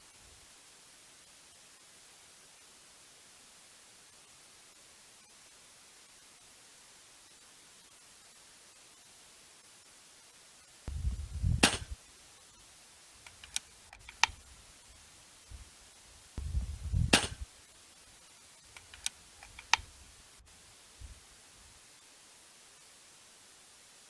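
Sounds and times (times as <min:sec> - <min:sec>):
air rifle shots: 0:10.9 - 0:12.0, 0:13.3 - 0:14.5, 0:16.4 - 0:17.5, 0:18.7 - 0:20.0
light sharp clicks: 0:10.9 - 0:12.0, 0:13.2 - 0:14.5, 0:16.4 - 0:17.5, 0:18.7 - 0:20.0.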